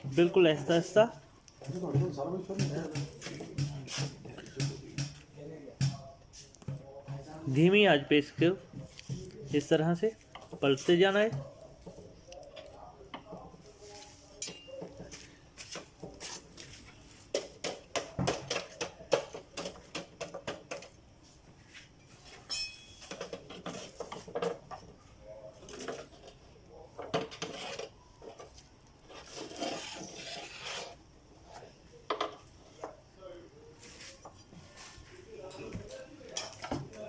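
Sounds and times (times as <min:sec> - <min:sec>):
metal utensil clinking against pan: 0:14.4 - 0:14.9, 0:22.5 - 0:23.4.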